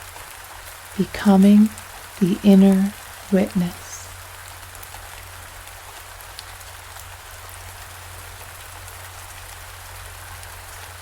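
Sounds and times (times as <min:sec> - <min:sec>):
steady rain hiss: 0:00.0 - 0:11.0
raindrop ticks: 0:00.5 - 0:11.0
low steady hum: 0:01.0 - 0:04.1.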